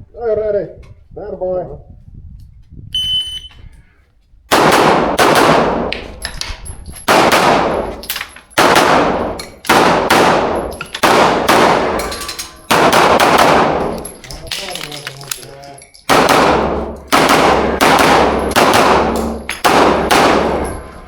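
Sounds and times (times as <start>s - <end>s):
pistol shots with echo: 4.5s - 6.2s, 7.1s - 14.0s, 16.1s - 21.0s.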